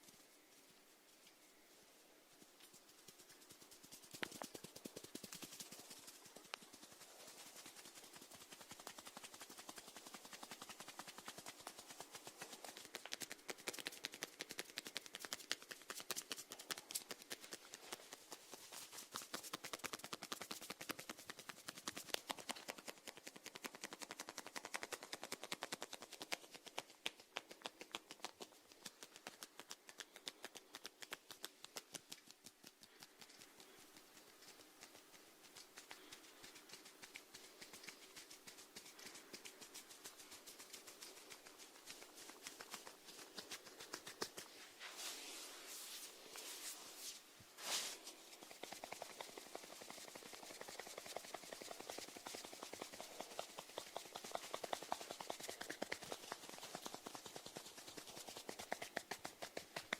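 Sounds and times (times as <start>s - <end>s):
snails feeding with tiny clicks: 2.4s - 44.6s, 48.1s - 59.9s.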